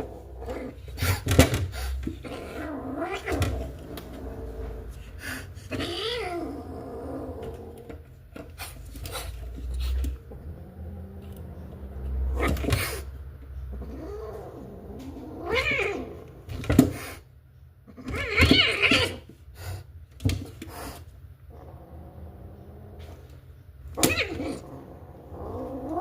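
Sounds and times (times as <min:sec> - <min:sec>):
cat yowling: 0:15.4 - 0:16.2, 0:24.0 - 0:24.6.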